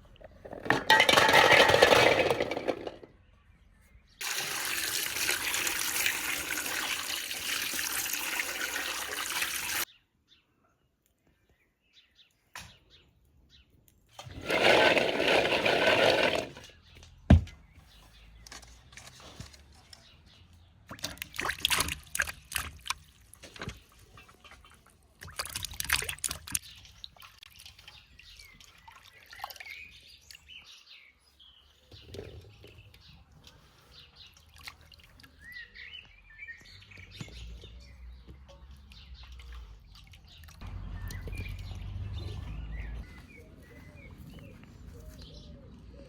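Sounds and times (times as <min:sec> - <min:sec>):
small birds chirping: 0:16.7 - 0:46.0
water splashing: 0:20.9 - 0:29.8.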